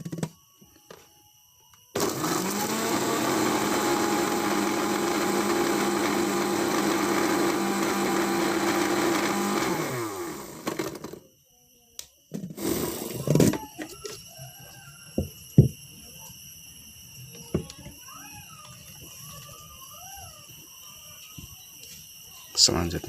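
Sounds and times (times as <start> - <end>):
electric blender running: 2.0 - 11.2, 12.6 - 13.3.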